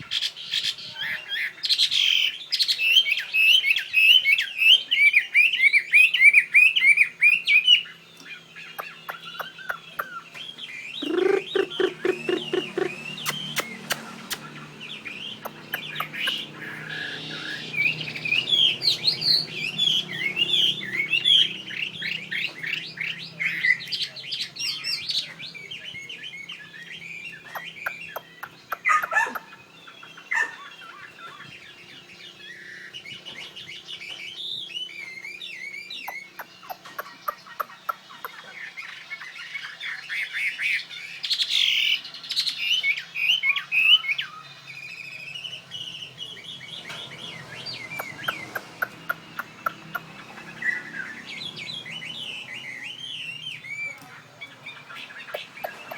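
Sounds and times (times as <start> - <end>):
bird singing whistled phrases: 0.0 - 31.8, 32.4 - 50.0.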